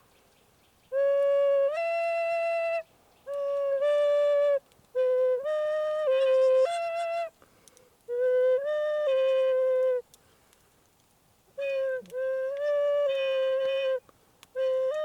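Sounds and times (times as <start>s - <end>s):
flute playing slow melody: 0.9s - 7.4s, 8.1s - 10.1s, 11.6s - 15.0s.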